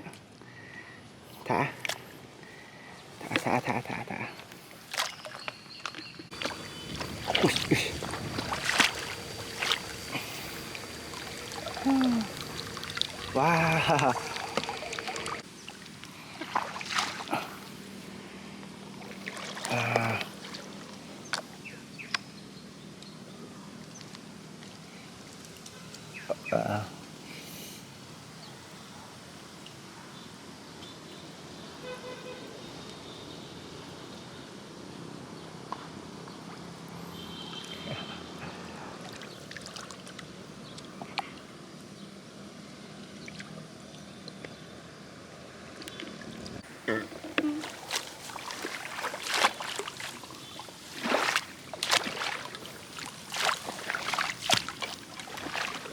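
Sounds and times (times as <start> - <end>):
water splashing and trickling: 3.2 - 22.0, 38.5 - 41.6, 43.0 - 44.8, 45.6 - 55.9.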